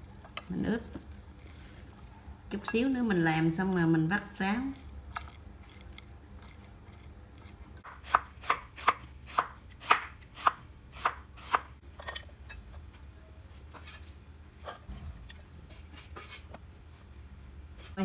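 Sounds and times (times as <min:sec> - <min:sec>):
knife chopping on cutting board: 0:07.8 - 0:11.7.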